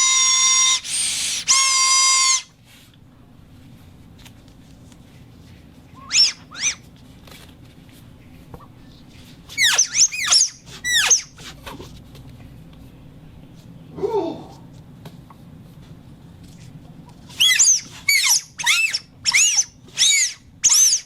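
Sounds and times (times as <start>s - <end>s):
rubber squeaking: 0.0s - 2.5s, 9.5s - 11.4s, 17.4s - 21.0s.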